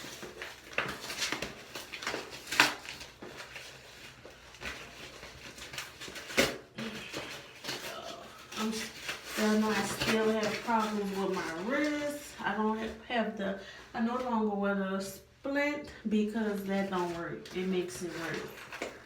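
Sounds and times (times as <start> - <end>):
packaging crackling and tearing: 0.0 - 12.4.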